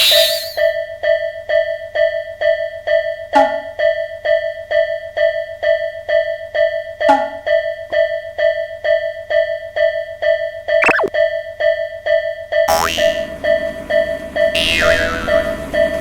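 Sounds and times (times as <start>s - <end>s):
sound effect sweeping in pitch: 10.8s - 11.1s, 12.7s - 13.3s, 14.6s - 15.5s.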